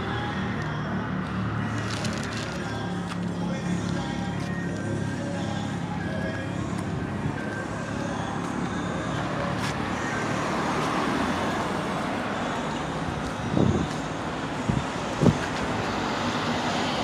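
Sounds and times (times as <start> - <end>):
road traffic passing: 0.0 - 17.0
vehicle passing by: 8.1 - 17.0.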